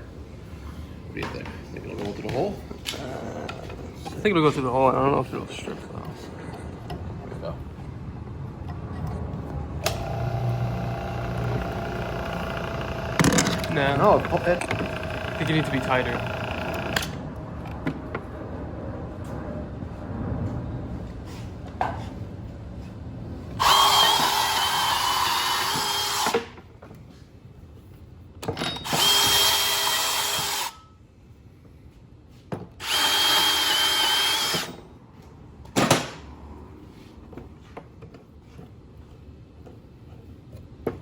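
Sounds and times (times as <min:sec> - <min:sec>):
power drill motor whine: 0:09.8 - 0:17.2, 0:23.6 - 0:26.4, 0:28.8 - 0:30.8, 0:32.8 - 0:34.8.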